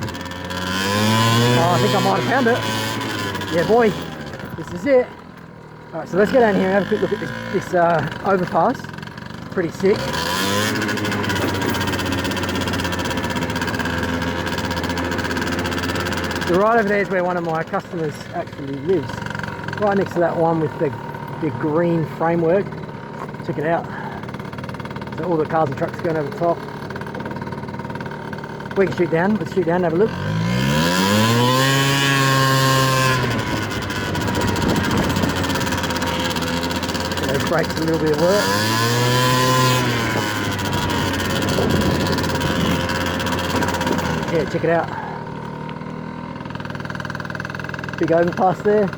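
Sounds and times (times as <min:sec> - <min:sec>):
scooter engine running: 0:00.0 - 0:48.9.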